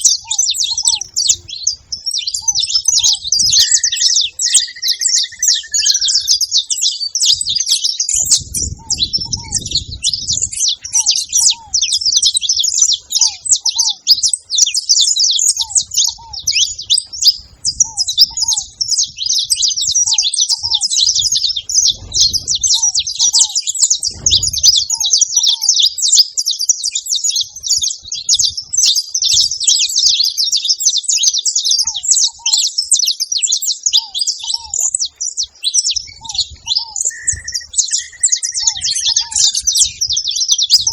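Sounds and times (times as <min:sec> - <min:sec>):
finches chirping: 0:00.0 - 0:40.9
low rumbles: 0:21.6 - 0:22.7
lower two-note bird call: 0:37.0 - 0:39.7.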